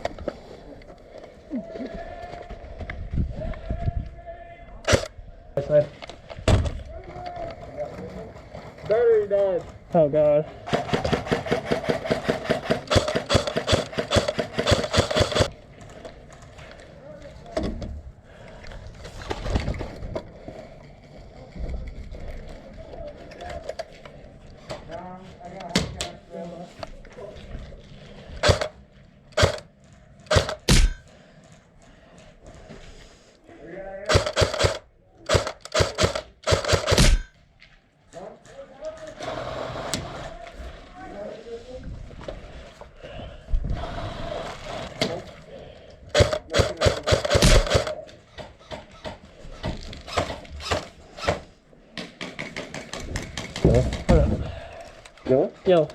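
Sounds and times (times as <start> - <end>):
airsoft gun firing full auto: 4.9 - 5.1, 10.7 - 15.5, 28.4 - 28.8, 29.4 - 29.7, 30.3 - 31.0, 34.1 - 37.3, 46.2 - 48.0.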